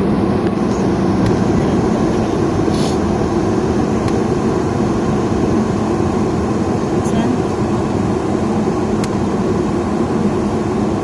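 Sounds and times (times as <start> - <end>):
vehicle rumbling along a road: 0.0 - 11.0
brief high hiss: 2.7 - 3.0.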